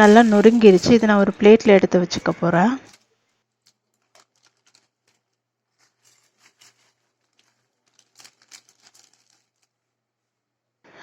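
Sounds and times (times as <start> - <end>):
chip packet crinkling: 2.2 - 9.9.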